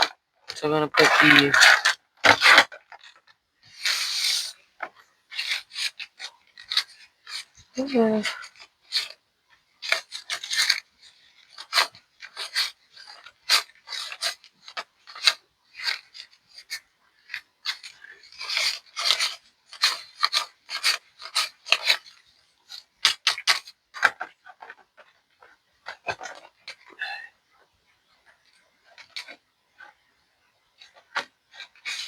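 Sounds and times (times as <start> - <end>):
paper rustling and crinkling: 9.8 - 27.0.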